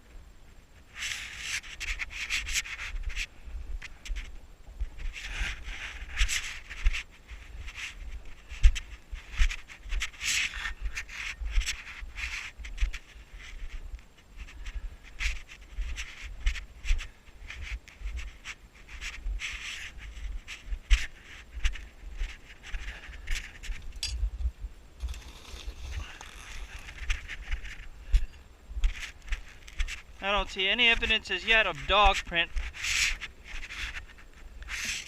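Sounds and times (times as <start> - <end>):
footsteps crunching through snow: 0.9 - 35.0
low microphone rumble: 23.8 - 29.0.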